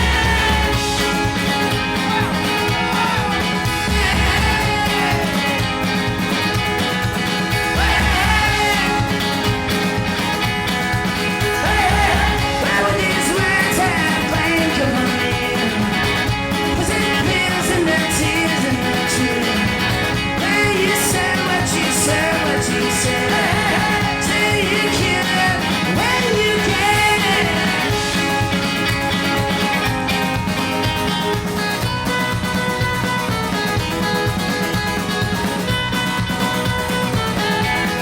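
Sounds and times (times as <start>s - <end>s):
person singing: 0.0s - 6.3s, 7.1s - 10.3s, 11.2s - 28.9s
rock band playing live: 0.0s - 38.0s.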